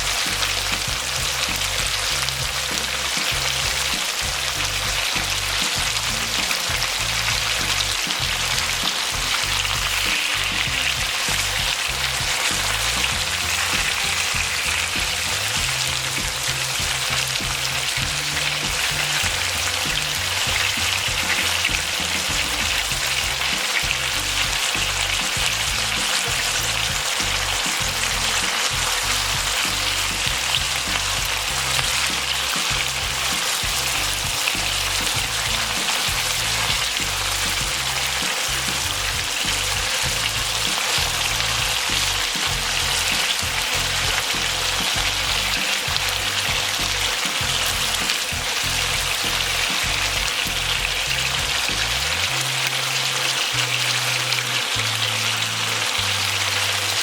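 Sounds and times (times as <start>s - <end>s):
background music: 0.0s - 57.0s
food sizzling in hot oil: 0.0s - 57.0s.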